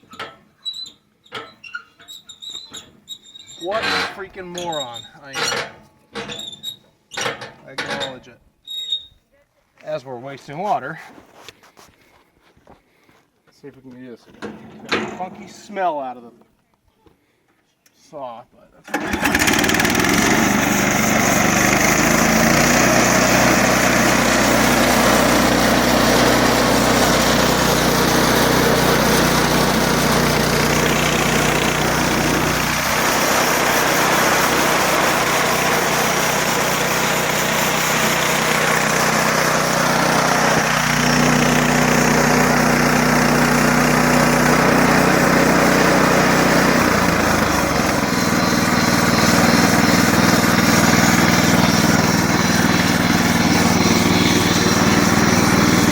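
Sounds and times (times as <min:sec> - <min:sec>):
sawmill gas engine running: 0:18.9 - 0:55.9.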